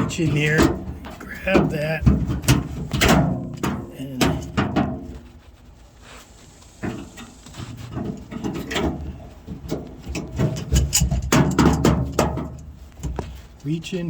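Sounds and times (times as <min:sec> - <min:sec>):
metallic clicks and knocks: 0:08.0 - 0:13.3.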